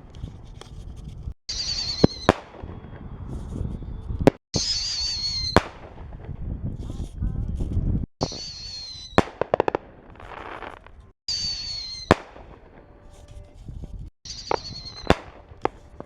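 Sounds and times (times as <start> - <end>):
high whistle of mortar shell: 1.5 - 6.6, 8.2 - 9.5, 10.4 - 13.4, 14.3 - 16.0
crackling pops: 14.5 - 16.0.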